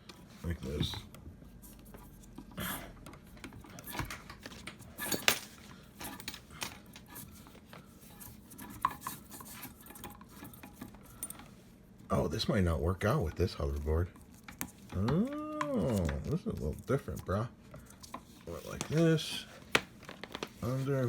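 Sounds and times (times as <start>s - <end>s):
metal parts clinking and rattling: 4.3s - 6.9s.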